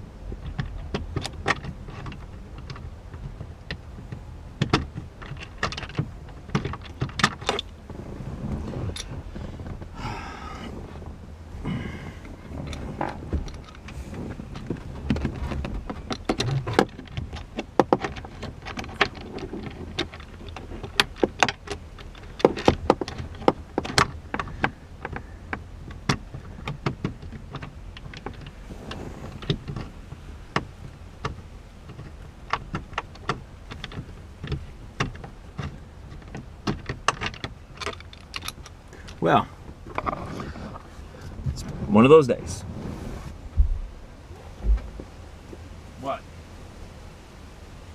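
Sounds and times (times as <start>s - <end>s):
metal handle and bolts clicking: 31.2s - 39.2s.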